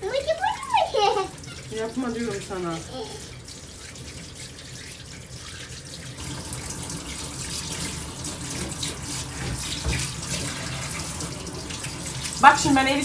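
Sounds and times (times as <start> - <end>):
tap running into sink: 6.2 - 12.4.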